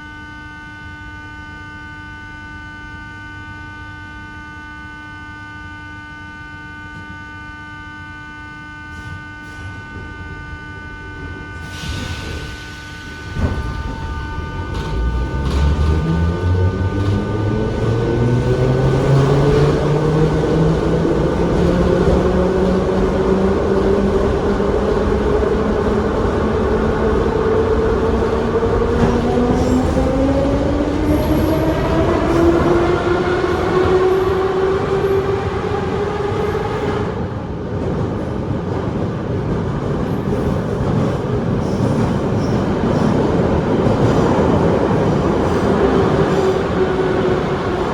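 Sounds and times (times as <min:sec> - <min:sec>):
train wheels running on rails: 0:11.2 - 0:47.9
traction motor whine rising: 0:12.4 - 0:24.7.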